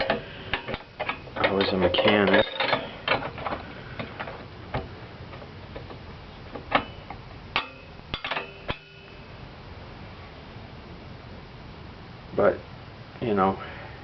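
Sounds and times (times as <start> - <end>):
wrenches clinking on metal: 0.0 - 3.6, 6.7 - 9.1.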